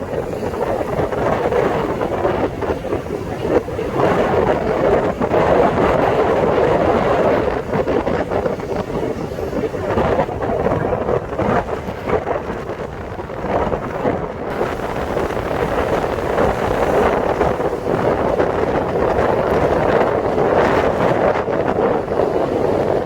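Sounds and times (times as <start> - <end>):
motorcycle rumble: 0.0 - 23.0
wind buffeting microphone: 0.0 - 23.0
road traffic: 14.5 - 19.0.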